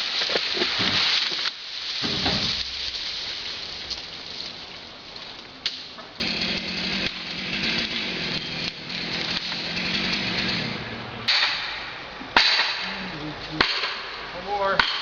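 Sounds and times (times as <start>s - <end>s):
tree crashing through branches: 0.0s - 14.8s
sharp wood crack: 0.0s - 15.0s
chainsaw idling: 6.2s - 11.2s.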